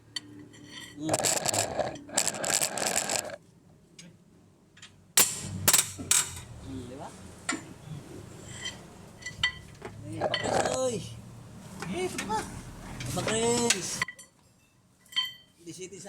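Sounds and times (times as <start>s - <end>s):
rapid metallic clicking: 1.1s - 3.4s
metal tools clinking and knocking: 8.5s - 10.8s, 13.3s - 15.6s.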